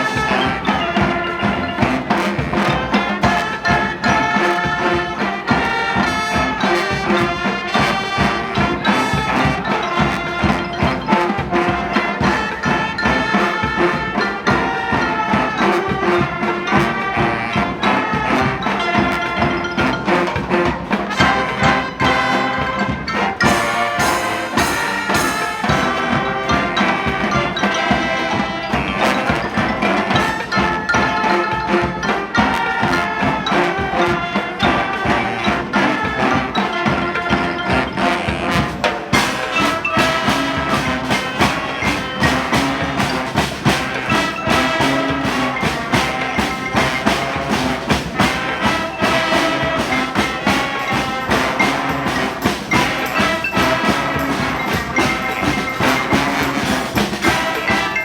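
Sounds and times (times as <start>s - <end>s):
horns playing a tune: 0.0s - 58.0s
steady drum beat: 0.0s - 58.0s.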